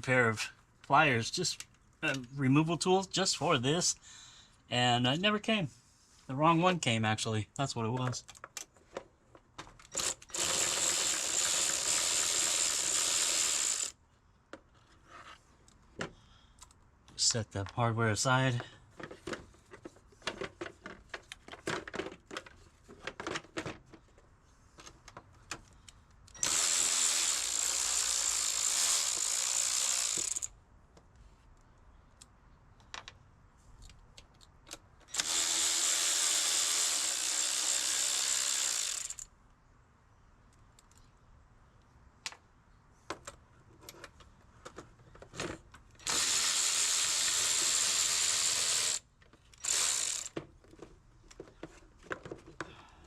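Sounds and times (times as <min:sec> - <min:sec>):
power tool motor running: 0:10.0 - 0:14.0, 0:26.4 - 0:30.5, 0:35.1 - 0:39.2, 0:46.0 - 0:49.0, 0:49.6 - 0:50.4
tools clicking and rattling: 0:18.6 - 0:24.2, 0:43.1 - 0:52.7.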